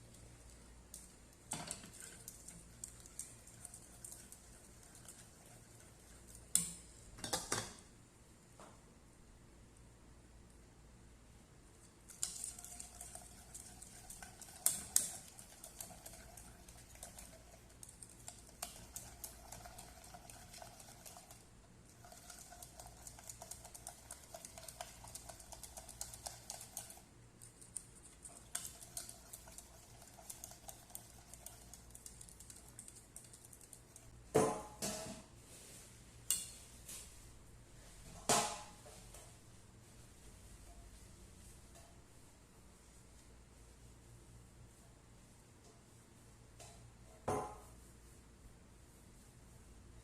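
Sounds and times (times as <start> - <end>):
utensil scraping a bowl: 12.1 - 27.0.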